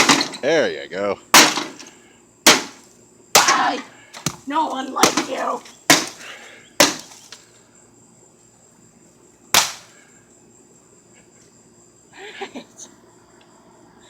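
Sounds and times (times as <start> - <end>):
blows smashing microwave oven: 1.4 - 1.9.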